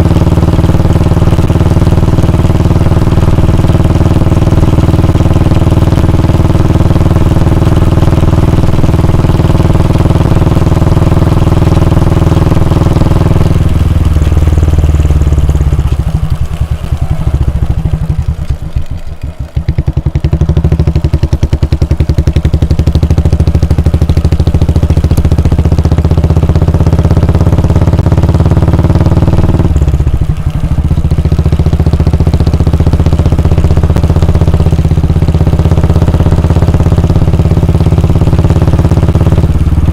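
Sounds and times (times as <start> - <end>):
exhaust thumps: 0.0 - 39.9
motorcycle engine running: 0.0 - 39.9.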